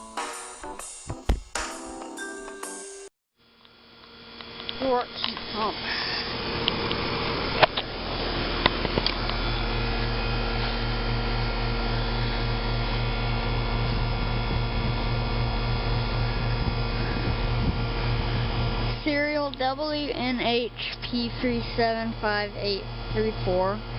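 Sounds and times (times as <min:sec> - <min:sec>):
heat pump humming: 0:03.6 - 0:23.9.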